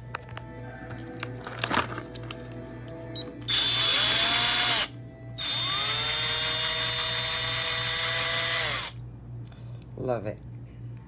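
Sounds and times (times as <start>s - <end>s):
cordless drill motor whine: 3.5s - 9.0s.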